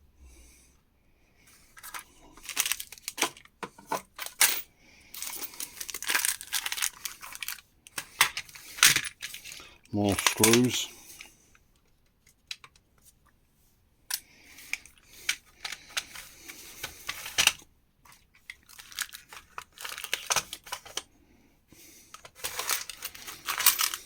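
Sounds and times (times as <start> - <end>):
rummaging through loose screws: 1.8 - 11.2, 14.1 - 21.1, 22.2 - 24.0.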